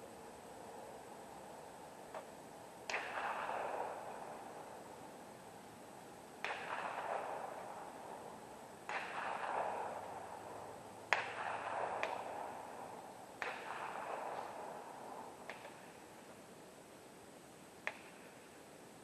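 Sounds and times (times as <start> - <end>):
gunshots with rolling echo: 2.9 - 5.1, 6.4 - 16.0.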